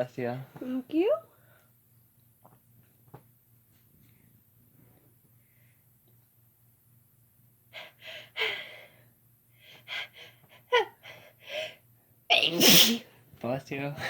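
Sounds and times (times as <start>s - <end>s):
woman sneezing: 12.4s - 13.1s.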